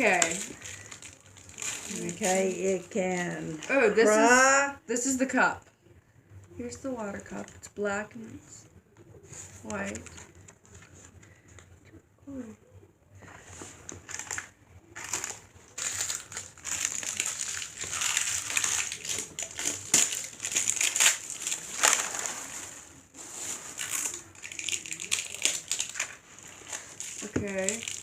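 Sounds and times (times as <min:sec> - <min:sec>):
plastic wrapper crinkling: 0:00.0 - 0:04.4, 0:09.6 - 0:11.6, 0:13.2 - 0:28.0.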